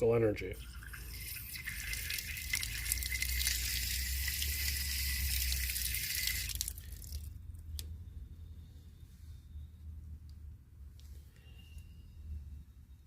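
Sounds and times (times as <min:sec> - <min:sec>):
running water: 0:00.5 - 0:07.3.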